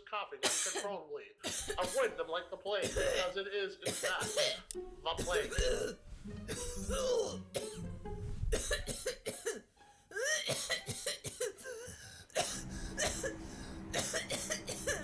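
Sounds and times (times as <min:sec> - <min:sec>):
person clearing throat: 0:00.4 - 0:03.3, 0:03.9 - 0:07.8, 0:08.5 - 0:09.6, 0:12.4 - 0:15.0
person coughing: 0:00.4 - 0:07.9, 0:08.5 - 0:09.6, 0:10.2 - 0:15.0.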